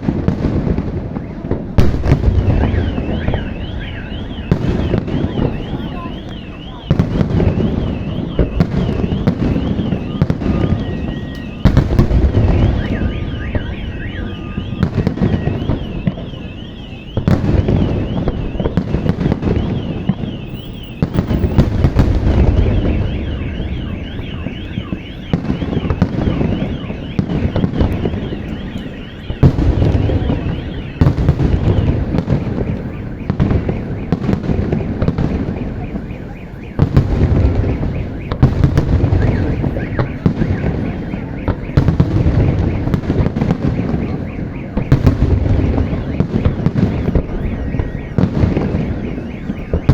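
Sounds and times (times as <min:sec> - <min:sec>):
car alarm warbling: 0:00.0 - 0:49.9
fireworks booming and crackling: 0:00.0 - 0:49.9.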